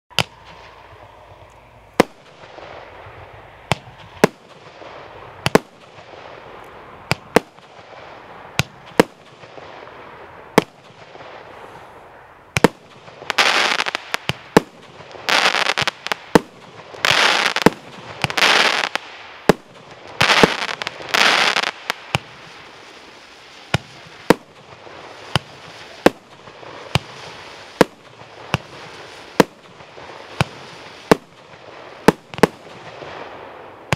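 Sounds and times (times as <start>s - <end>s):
firework bangs: 0.1s - 33.9s
firework noisy bursts: 12.6s - 33.9s.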